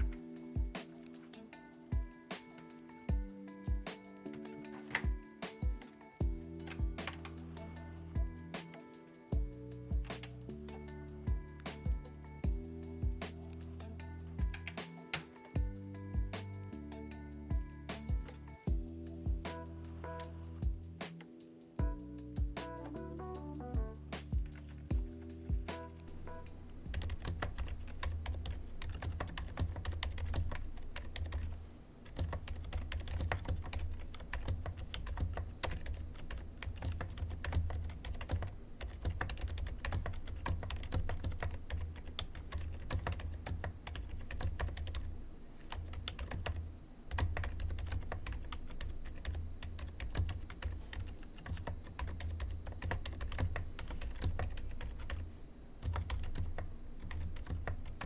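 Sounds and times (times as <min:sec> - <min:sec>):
typing on mechanical keyboard: 0:04.0 - 0:07.4, 0:26.9 - 0:55.2, 0:55.8 - 0:58.0.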